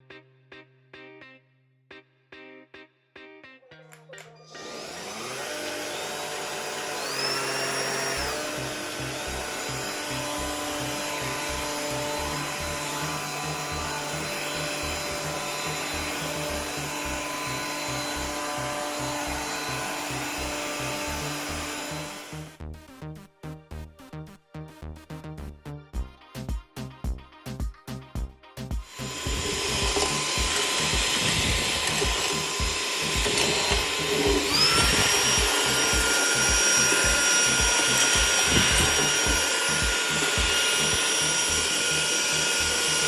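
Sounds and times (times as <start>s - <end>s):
vacuum cleaner running: 4.5s - 22.5s, 28.9s - 43.0s
background music with steady beat: 8.2s - 43.0s.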